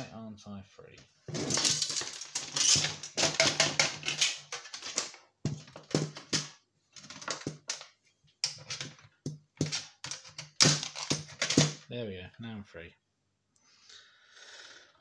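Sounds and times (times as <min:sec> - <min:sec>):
circuit board clicking and clattering: 0:01.4 - 0:11.8.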